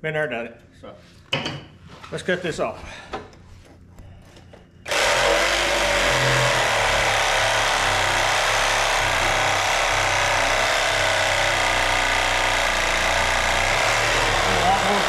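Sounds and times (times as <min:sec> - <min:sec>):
power saw cutting wood: 0:04.9 - 0:15.0.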